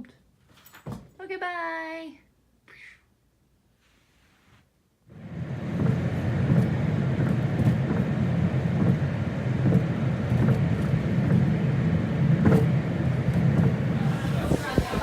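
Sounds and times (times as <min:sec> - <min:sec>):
moving vehicle rumble: 0:05.2 - 0:15.0.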